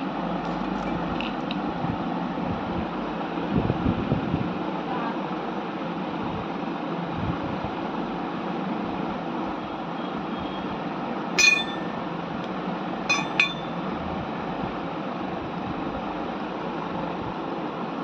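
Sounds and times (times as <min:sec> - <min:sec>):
sharp clinks of water bottle: 0:11.4 - 0:12.0, 0:13.1 - 0:13.8.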